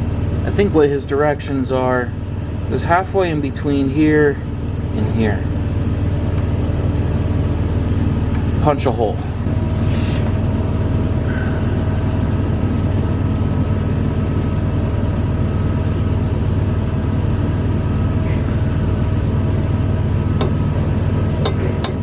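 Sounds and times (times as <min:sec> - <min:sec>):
shop machinery humming: 0:00.0 - 0:22.0
hammer tapping metal punch: 0:21.4 - 0:22.0.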